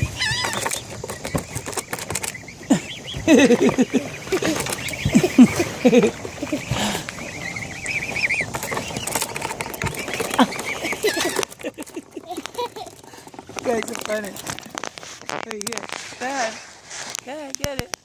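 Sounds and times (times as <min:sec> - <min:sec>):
short low bird calls: 0:00.0 - 0:11.4
young birds peeping: 0:00.0 - 0:18.0
sharp snaps and clicks: 0:17.2 - 0:18.0.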